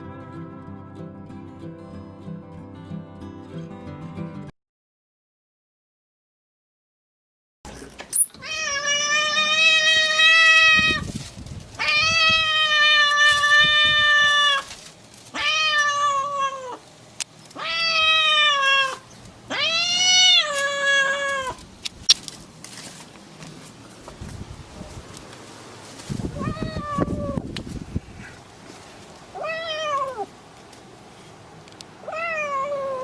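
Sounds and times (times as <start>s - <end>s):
kitten meowing: 17.6s - 21.6s.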